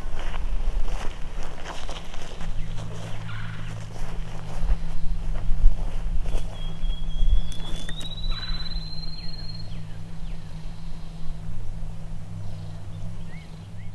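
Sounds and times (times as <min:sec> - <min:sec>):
bird chirps: 0:02.3 - 0:05.4, 0:06.3 - 0:11.6, 0:12.3 - 0:13.9
turkey gobbling: 0:02.7 - 0:04.1
high whistled songbird note: 0:06.4 - 0:11.4.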